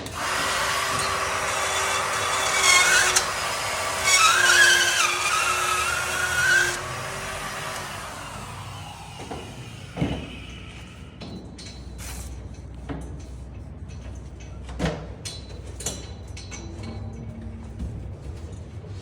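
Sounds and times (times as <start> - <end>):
drywall router whining: 0.0 - 10.0.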